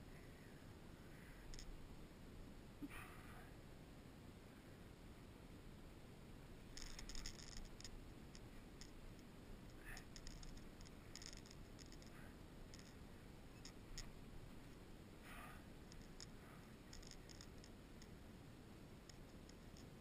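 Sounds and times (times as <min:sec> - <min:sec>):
low hiss: 0:00.0 - 0:20.0
irregular clicking and scratching: 0:01.4 - 0:01.8, 0:06.6 - 0:18.2, 0:19.0 - 0:20.0.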